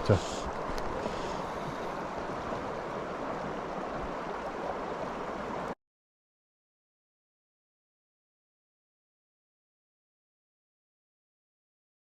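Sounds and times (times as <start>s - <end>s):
river water rushing: 0.0s - 5.8s.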